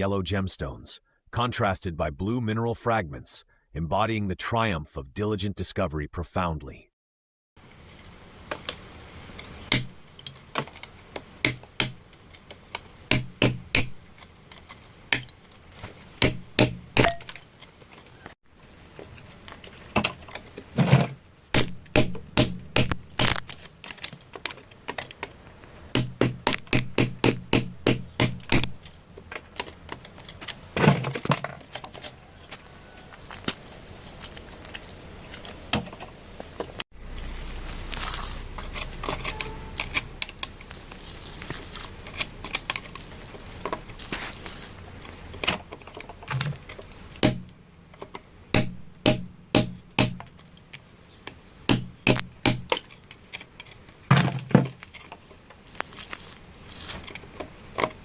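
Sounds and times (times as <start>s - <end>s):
rustling noise: 29.0s - 47.2s.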